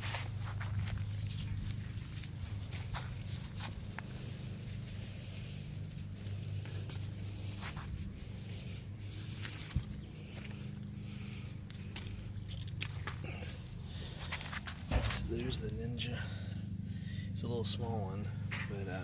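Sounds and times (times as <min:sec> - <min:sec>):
low engine hum: 0:00.0 - 0:19.0
heavy breathing: 0:03.1 - 0:17.4.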